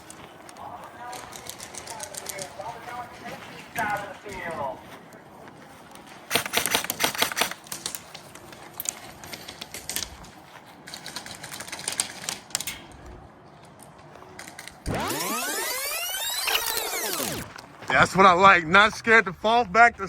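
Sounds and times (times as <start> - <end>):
airsoft gunfire: 6.3 - 7.7.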